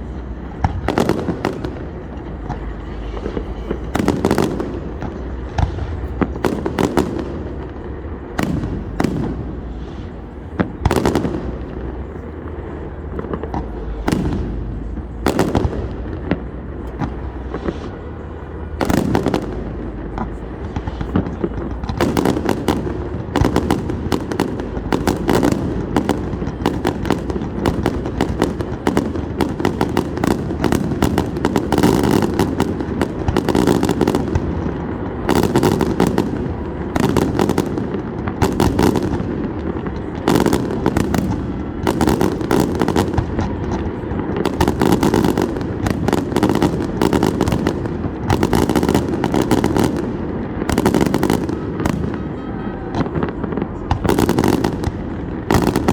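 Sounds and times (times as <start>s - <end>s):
distant fireworks bangs: 0.0s - 55.9s
fireworks crackling and popping: 0.0s - 55.9s.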